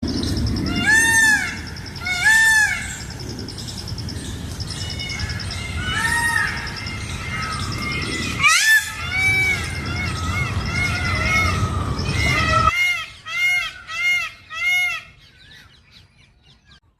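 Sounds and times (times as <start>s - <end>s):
peacock honking calls: 0.6s - 3.1s, 4.9s - 15.2s.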